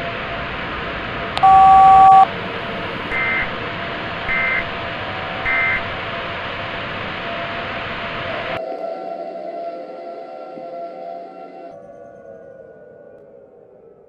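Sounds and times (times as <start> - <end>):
static hiss: 0.0 - 8.6
data tone bursts: 1.4 - 2.3, 3.1 - 3.5, 4.3 - 4.7, 5.5 - 5.8
loud two-tone beep: 1.4 - 2.3, 3.2 - 3.4, 4.3 - 4.6, 5.5 - 5.8.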